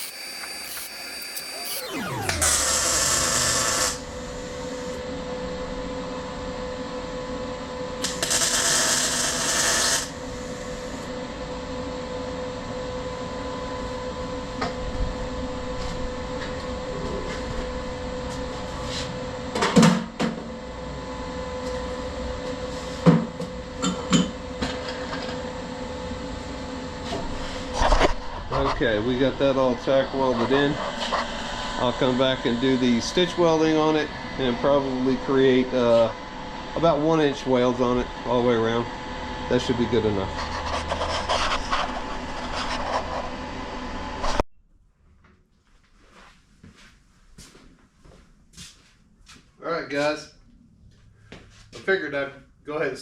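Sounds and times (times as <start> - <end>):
welding arc crackling: 0.0 - 5.0, 8.0 - 10.2
power tool whine: 0.0 - 6.0, 8.0 - 11.2
machine hum: 0.0 - 44.4.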